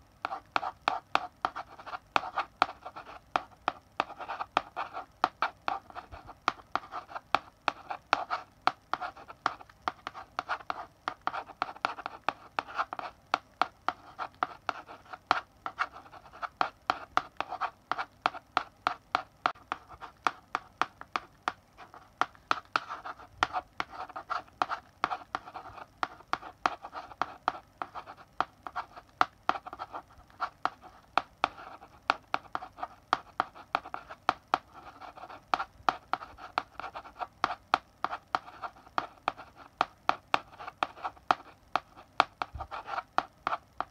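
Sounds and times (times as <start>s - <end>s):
chalk tapping on blackboard: 0.0s - 43.9s
chalk scratching: 0.2s - 43.9s.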